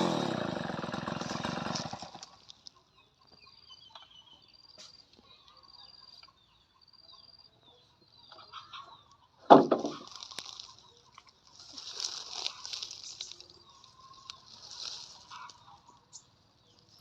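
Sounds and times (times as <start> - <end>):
loud knock: 9.5 - 10.0.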